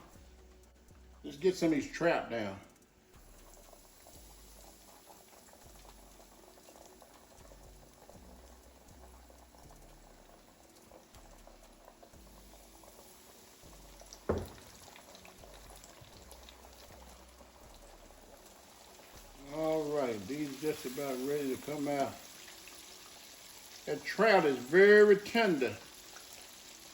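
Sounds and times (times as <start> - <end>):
fish sizzling in grease: 0.0 - 26.9
sharp knock: 14.3 - 14.7.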